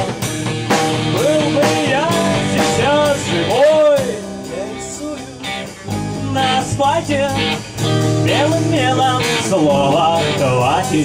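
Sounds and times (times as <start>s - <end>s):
guitar accompaniment: 0.0s - 11.0s
person singing: 1.1s - 11.0s.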